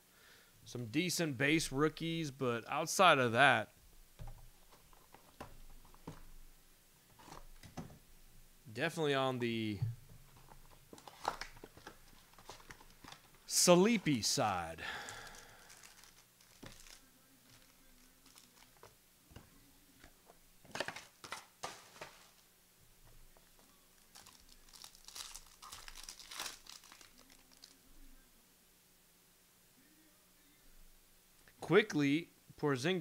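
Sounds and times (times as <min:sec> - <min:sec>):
card pack wrapper crinkling: 0:10.4 - 0:14.3, 0:15.0 - 0:18.9, 0:24.0 - 0:27.8.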